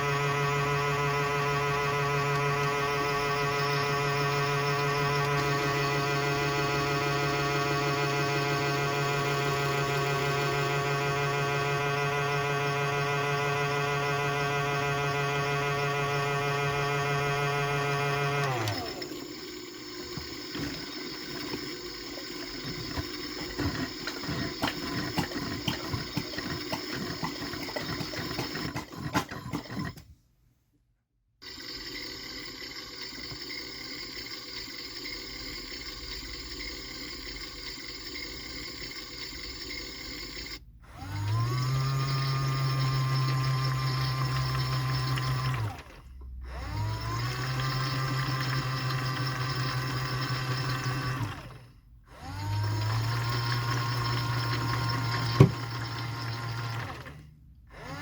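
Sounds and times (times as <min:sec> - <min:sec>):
motor humming: 0:00.0 - 0:30.1, 0:52.2 - 0:58.0
washing machine water sloshing: 0:20.1 - 0:30.0.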